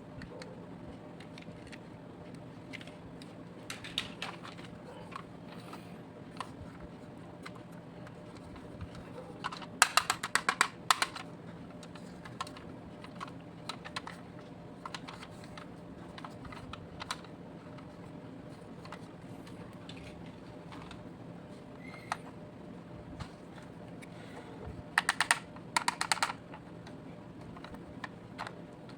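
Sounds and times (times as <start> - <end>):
toys clicking and tapping: 3.7 - 5.2, 8.3 - 14.2, 25.0 - 26.6.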